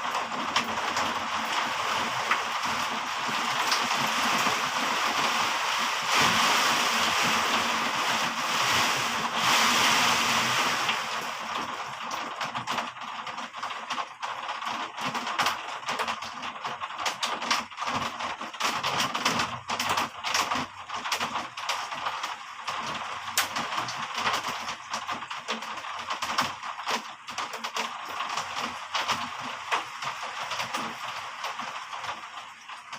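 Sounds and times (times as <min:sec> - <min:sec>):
rain drips and splashes: 0:00.0 - 0:32.9
heavy rain hiss: 0:00.1 - 0:12.4.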